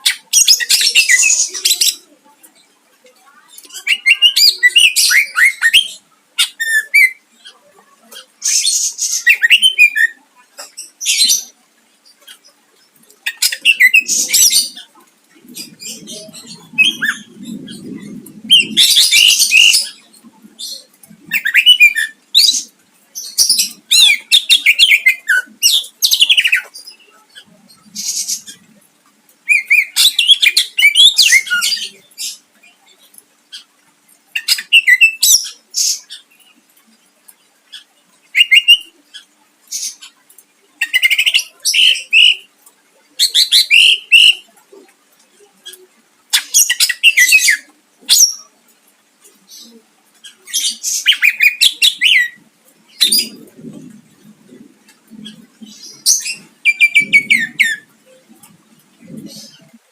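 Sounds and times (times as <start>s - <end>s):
bird singing trills and sweeps: 54.6s - 57.9s.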